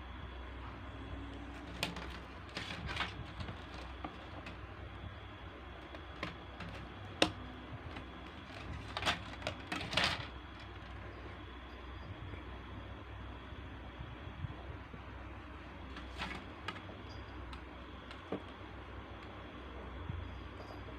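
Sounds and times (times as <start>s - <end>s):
steady low hum: 0.0s - 20.9s
rustling: 1.3s - 11.3s, 15.8s - 18.6s.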